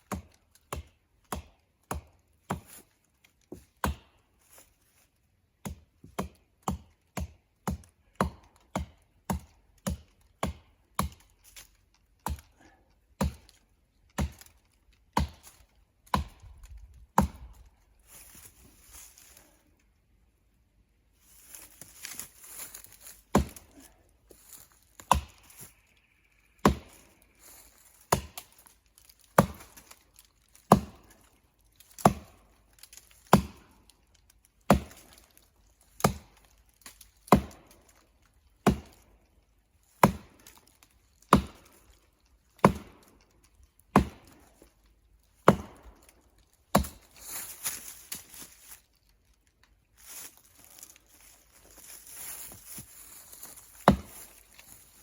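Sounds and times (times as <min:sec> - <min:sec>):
axe chopping tree trunk: 0:00.0 - 0:02.9, 0:03.5 - 0:04.2, 0:05.6 - 0:11.3, 0:12.2 - 0:17.7, 0:21.5 - 0:23.9, 0:24.5 - 0:25.7, 0:26.6 - 0:30.0, 0:30.6 - 0:31.2, 0:31.9 - 0:33.8, 0:34.6 - 0:35.2, 0:36.0 - 0:38.0, 0:38.6 - 0:39.1, 0:40.0 - 0:40.6, 0:41.2 - 0:41.8, 0:42.6 - 0:43.2, 0:43.9 - 0:44.6, 0:45.4 - 0:48.5, 0:52.5 - 0:54.5.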